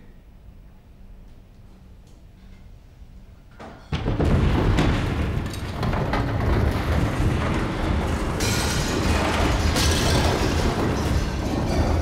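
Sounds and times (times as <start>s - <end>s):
loud dense rumbling: 4.0s - 12.0s.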